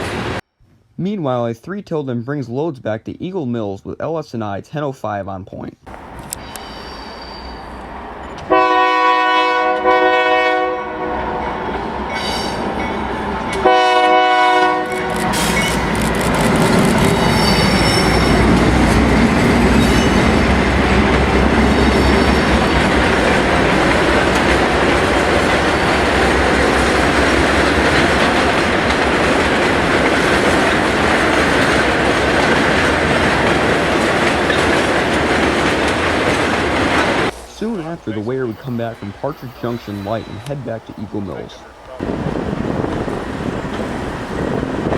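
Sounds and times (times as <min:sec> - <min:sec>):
locomotive horn chord: 0:08.5 - 0:11.4, 0:13.5 - 0:15.4
train wheels rumbling on rails: 0:09.7 - 0:44.9
locomotive engine running: 0:14.9 - 0:44.9.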